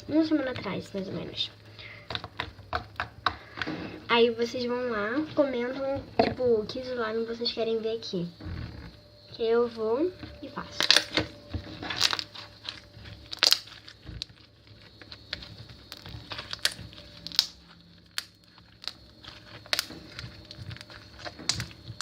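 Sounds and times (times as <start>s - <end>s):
sticky slime clicks and pops: 13.3s - 13.8s, 15.4s - 22.0s.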